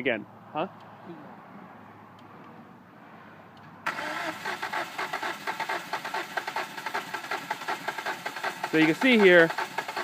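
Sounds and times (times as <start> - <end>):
car engine cranking on starter: 3.8 - 10.0.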